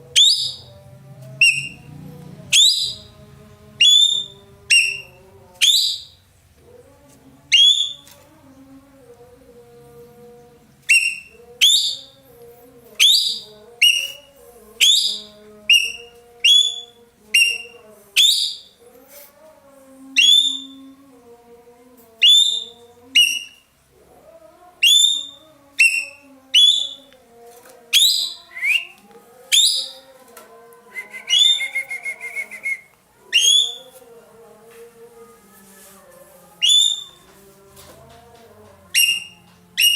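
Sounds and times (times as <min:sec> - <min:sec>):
buzzy rattling bird trill: 0:36.6 - 0:37.2.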